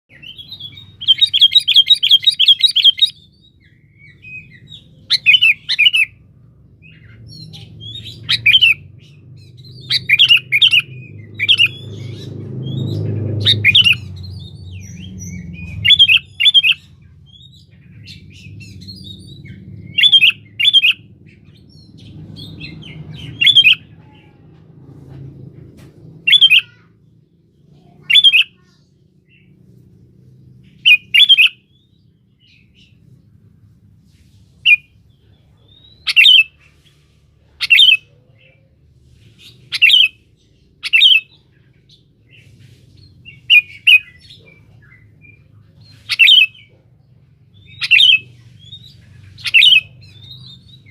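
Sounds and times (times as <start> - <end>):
bird calling: 0.1 - 6.2, 6.8 - 21.1, 22.8 - 24.4, 26.3 - 26.9, 27.8 - 28.8, 30.6 - 31.9, 35.6 - 36.8, 37.5 - 38.7, 39.4 - 47.0, 47.6 - 50.9
low background rumble: 0.1 - 50.9.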